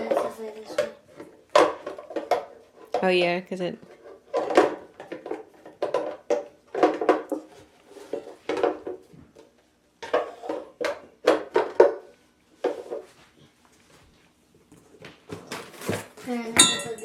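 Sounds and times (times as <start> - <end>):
plastic parts knocking and clacking: 0.0 - 3.1, 3.9 - 7.5, 8.2 - 12.1.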